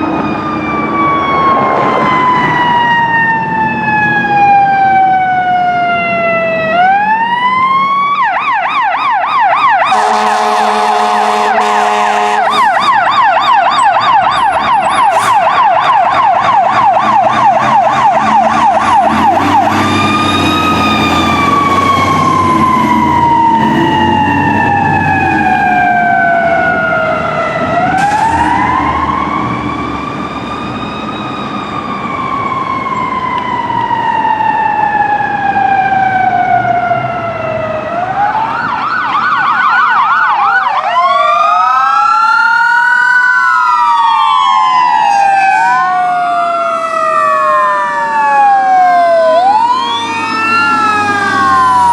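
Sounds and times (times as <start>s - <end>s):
electronic siren wailing and yelping: 0.0s - 51.9s
air horn blast: 9.9s - 13.0s, 15.0s - 15.5s.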